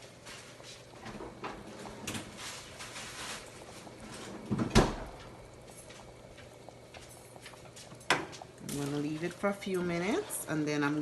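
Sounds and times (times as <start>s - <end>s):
kitchen clatters and scrapes: 0.3s - 4.8s.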